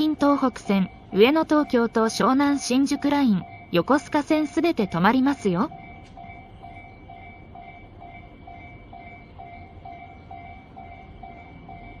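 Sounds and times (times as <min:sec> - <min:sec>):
level-crossing alarm ringing: 0:00.0 - 0:12.0.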